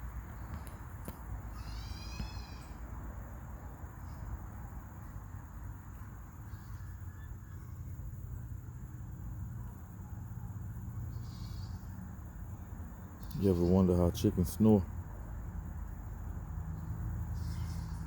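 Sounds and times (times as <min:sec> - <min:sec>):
rooster snoring squeaks: 0:17.3 - 0:18.0.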